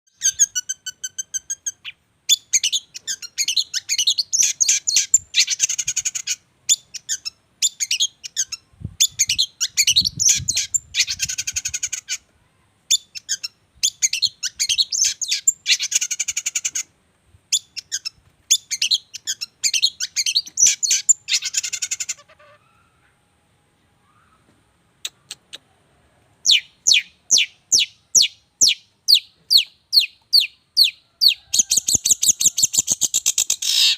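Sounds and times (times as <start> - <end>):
songbird singing: 0.1 - 16.9, 17.5 - 33.9
down-slurred bird whistles: 26.4 - 33.9.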